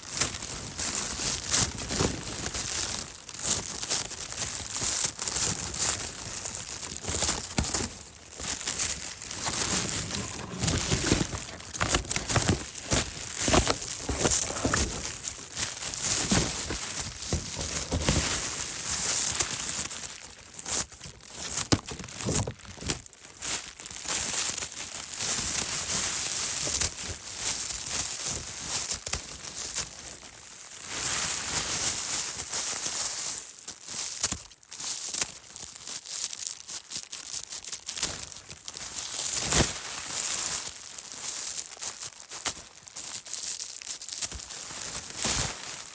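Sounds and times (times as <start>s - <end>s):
nylon bag crinkling and tearing: 0.3s - 23.1s.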